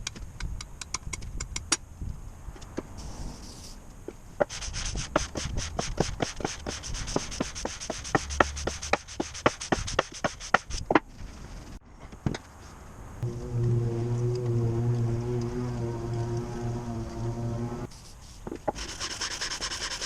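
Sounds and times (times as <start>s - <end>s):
metal scraping on wet sandpaper: 4.5s - 10.7s, 13.5s - 20.0s.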